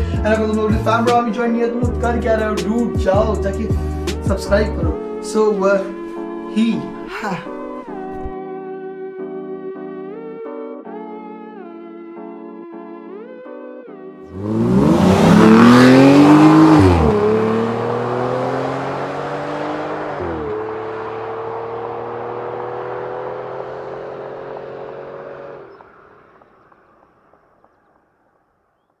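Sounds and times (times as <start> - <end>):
car engine accelerating: 14.3 - 26.8.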